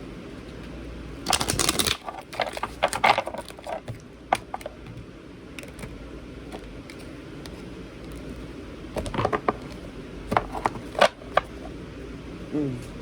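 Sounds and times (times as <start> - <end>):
cards being shuffled: 1.2 - 4.8.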